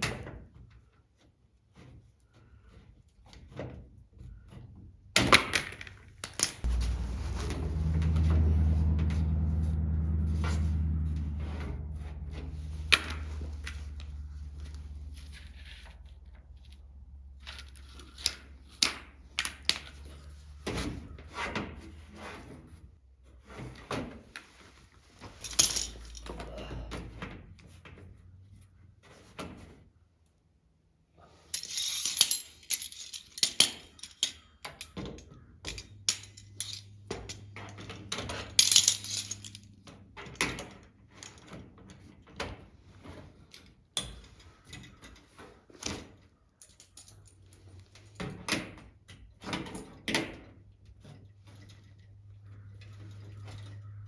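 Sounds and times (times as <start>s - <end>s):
tools and fasteners clinking: 10.4s - 16.8s, 25.2s - 27.4s, 31.4s - 54.0s.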